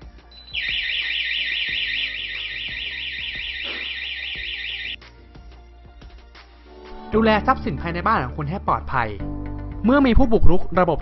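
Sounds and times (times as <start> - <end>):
electronic warbling siren: 0.5 - 5.0.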